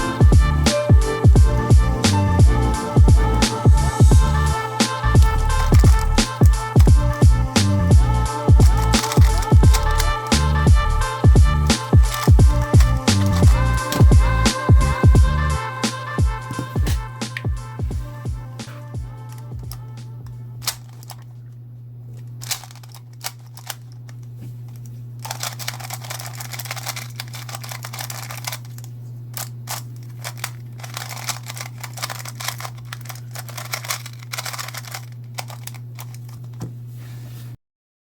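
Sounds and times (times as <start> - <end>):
steady low hum: 0.0 - 37.6
puzzle cube clicking: 8.6 - 10.7, 11.8 - 14.7, 22.4 - 23.9, 25.2 - 28.8, 29.4 - 36.4.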